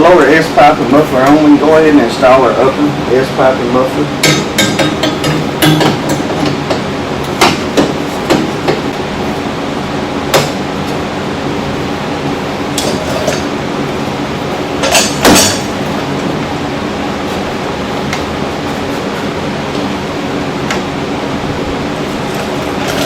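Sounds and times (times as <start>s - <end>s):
steady background hum: 0.0s - 23.0s
metal clanks and knocks: 4.2s - 8.9s, 14.8s - 16.4s.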